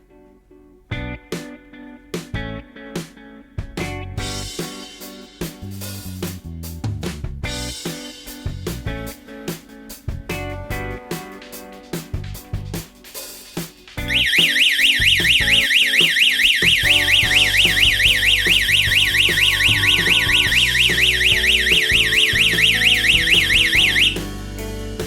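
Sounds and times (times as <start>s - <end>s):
electronic alarm siren warbling: 14.1s - 24.3s.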